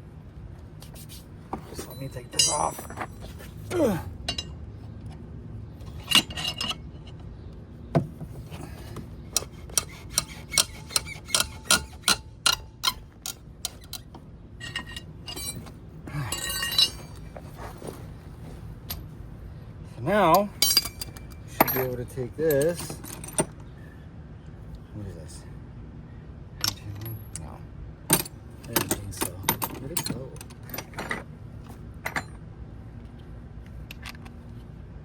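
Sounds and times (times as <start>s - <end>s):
metal hand tools clinking: 1.8s - 3.5s, 5.9s - 6.8s, 14.6s - 17.4s, 20.3s - 23.5s, 28.1s - 31.0s.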